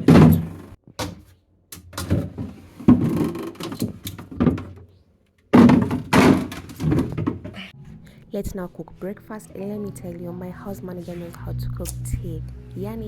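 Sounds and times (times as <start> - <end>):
food containers clattering in fridge: 1.8 - 4.8, 5.5 - 7.8.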